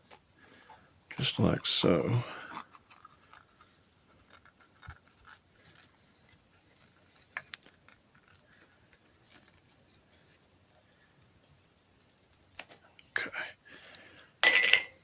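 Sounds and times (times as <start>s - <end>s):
small metal parts clicking: 1.8s - 13.2s.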